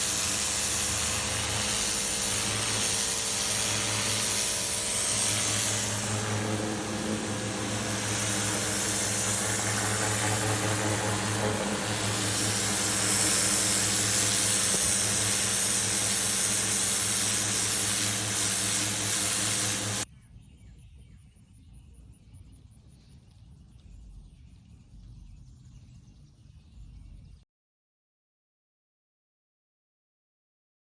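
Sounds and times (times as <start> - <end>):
hiss of water spray: 0.0 - 20.0
pressure washer motor hum: 0.0 - 20.1.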